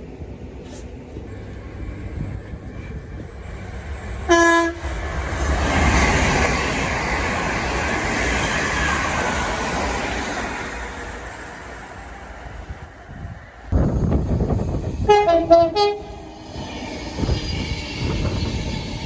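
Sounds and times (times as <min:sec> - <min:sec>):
train rail noise: 0:00.0 - 0:19.0
train horn blast: 0:04.3 - 0:04.9, 0:15.0 - 0:16.3.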